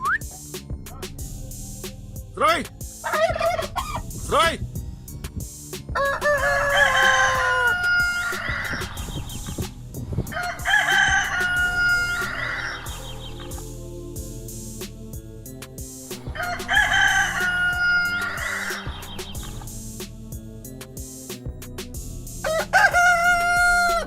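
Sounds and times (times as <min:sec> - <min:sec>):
rooster crowing: 0:05.9 - 0:08.8, 0:10.3 - 0:12.9, 0:16.3 - 0:18.9, 0:22.4 - 0:24.0.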